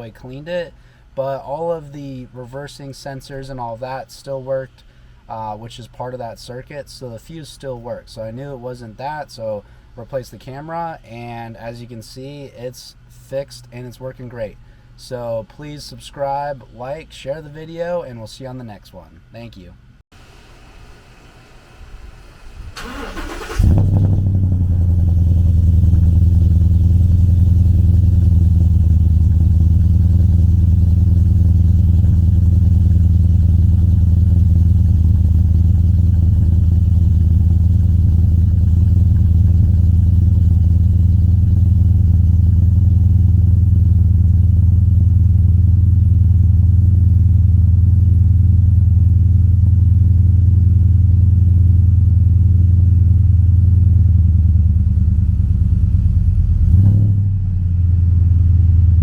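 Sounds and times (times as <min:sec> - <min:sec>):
truck engine cranking and idling: 0:22.4 - 0:57.1.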